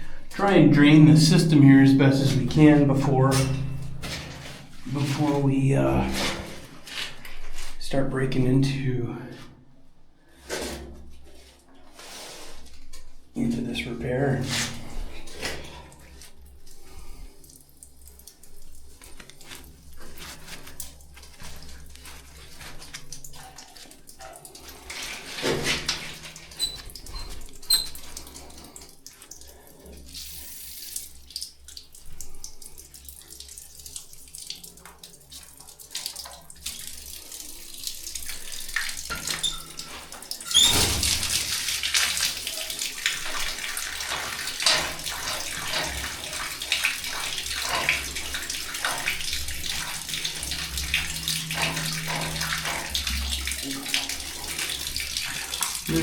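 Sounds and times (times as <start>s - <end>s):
water rushing from drain: 14.0s - 56.0s.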